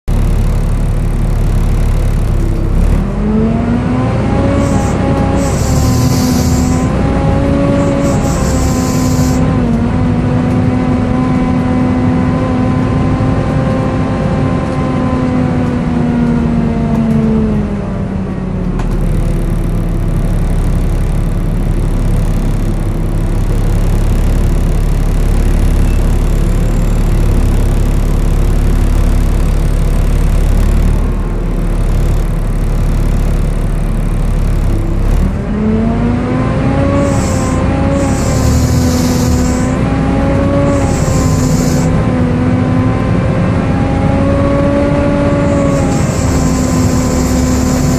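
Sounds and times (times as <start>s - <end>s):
bus engine running: 0.0s - 47.9s
screechy cooling fan whine: 4.3s - 9.5s, 36.6s - 42.5s, 44.6s - 47.9s.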